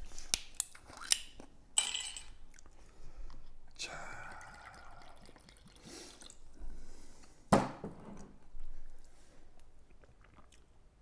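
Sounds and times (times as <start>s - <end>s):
wet chewing: 9.5s - 11.0s.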